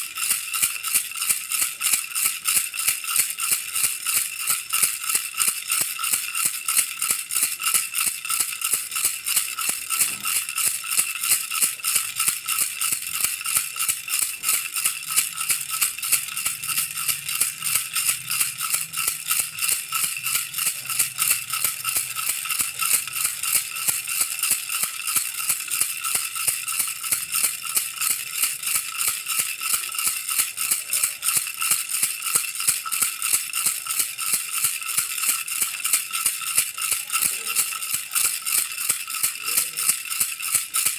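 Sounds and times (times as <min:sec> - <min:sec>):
baby rattle shaken: 0:00.0 - 0:40.9.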